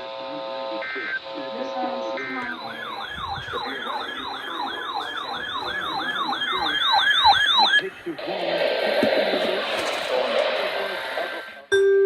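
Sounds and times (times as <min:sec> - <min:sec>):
electronic yelp siren: 0:00.8 - 0:11.7.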